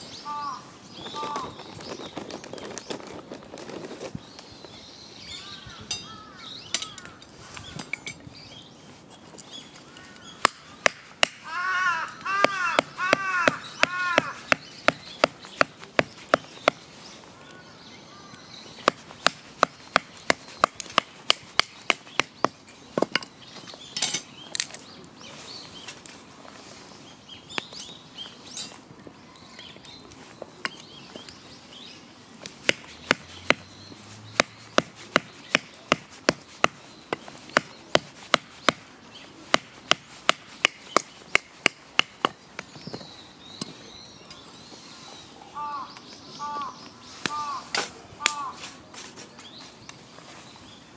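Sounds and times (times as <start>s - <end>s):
sharp chopping strikes: 10.4s - 11.4s, 32.6s - 33.7s, 34.3s - 38.9s.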